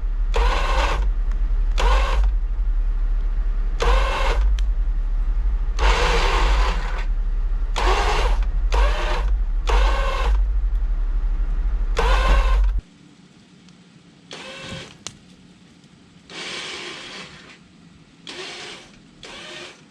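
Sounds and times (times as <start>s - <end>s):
electric winch motor whining: 0.0s - 1.2s, 1.8s - 2.4s, 3.8s - 4.6s, 5.8s - 7.1s, 7.7s - 10.5s, 11.9s - 12.8s, 14.3s - 15.0s, 16.3s - 17.6s, 18.2s - 19.8s
car engine running: 0.0s - 12.8s.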